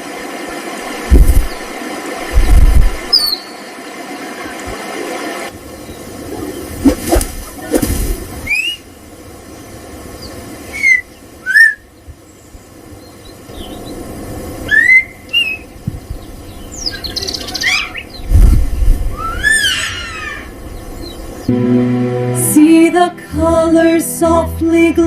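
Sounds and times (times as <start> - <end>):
bird whistling chirps: 3.1 - 3.6, 8.4 - 8.8, 10.2 - 11.8, 14.7 - 15.7.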